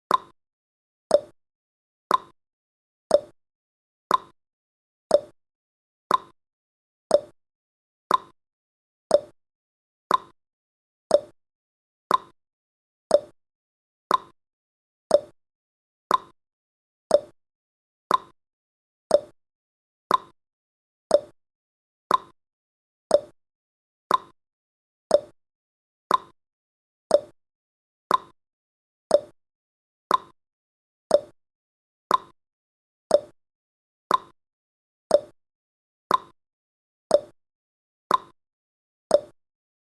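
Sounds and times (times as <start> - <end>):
clock ticking: 0.1 - 0.3, 1.1 - 1.3, 2.1 - 2.3, 3.1 - 3.3, 4.1 - 4.3, 5.1 - 5.3, 6.1 - 6.3, 7.1 - 7.3, 8.1 - 8.3, 9.1 - 9.3, 10.1 - 10.3, 11.1 - 11.3, 12.1 - 12.3, 13.1 - 13.3, 14.1 - 14.3, 15.1 - 15.3, 16.1 - 16.3, 17.1 - 17.3, 18.1 - 18.3, 19.1 - 19.3, 20.1 - 20.3, 21.1 - 21.3, 22.1 - 22.3, 23.1 - 23.3, 24.1 - 24.3, 25.1 - 25.3, 26.1 - 26.3, 27.1 - 27.3, 28.1 - 28.3, 29.1 - 29.3, 30.1 - 30.4, 31.1 - 31.4, 32.1 - 32.3, 33.1 - 33.4, 34.1 - 34.4, 35.1 - 35.4, 36.1 - 36.4, 37.1 - 37.4, 38.1 - 38.4, 39.1 - 39.4.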